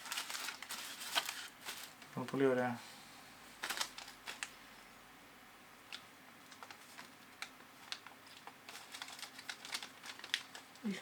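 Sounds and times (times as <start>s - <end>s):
small parts and packaging clicking: 0.0s - 2.4s, 3.6s - 4.6s, 5.9s - 10.9s.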